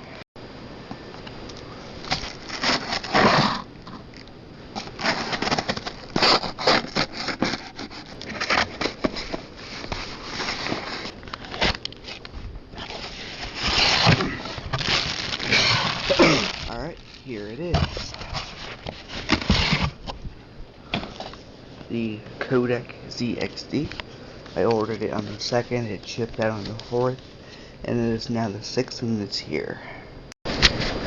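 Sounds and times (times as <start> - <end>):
packaging rustling and crackling: 1.9 - 20.2.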